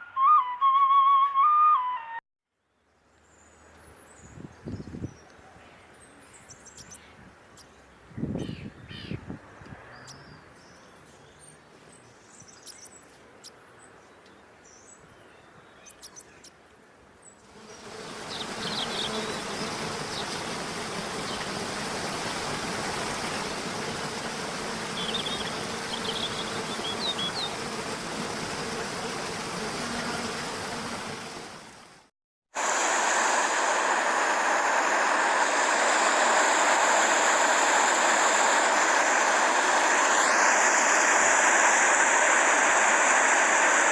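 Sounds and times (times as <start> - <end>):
bird chirps: 3.2 - 7.8, 9.9 - 16.6, 25.0 - 27.5
steady rushing noise: 32.6 - 43.9.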